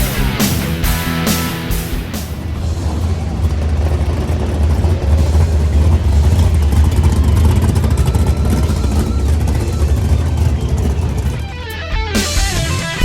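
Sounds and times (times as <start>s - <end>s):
loud engine rumbling: 0.0s - 13.0s.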